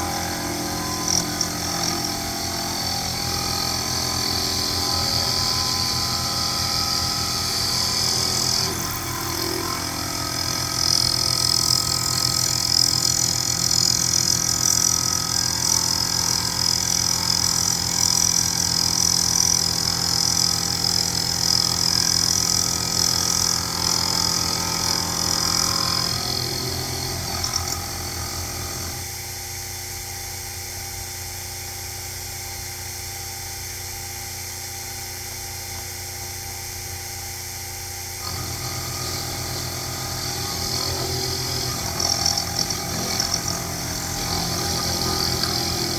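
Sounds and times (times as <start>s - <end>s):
high-pitched cutting whine: 0.0s - 29.1s, 38.2s - 45.9s
milling machine motor hum: 0.0s - 29.2s, 38.2s - 45.9s.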